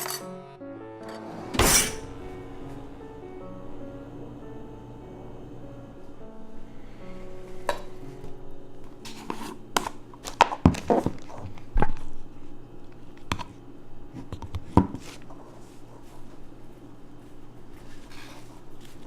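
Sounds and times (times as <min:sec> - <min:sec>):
low hum: 0:01.1 - 0:10.4.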